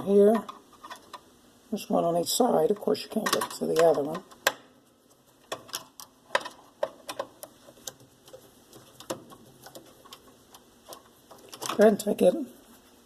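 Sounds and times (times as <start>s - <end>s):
screwdriver clicking and scraping metal: 3.2s - 12.0s.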